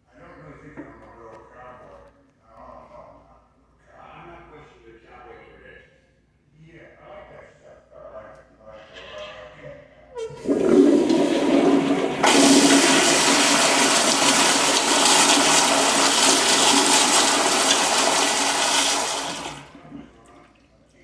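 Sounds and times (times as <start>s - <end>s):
toilet flushing: 10.1s - 20.7s.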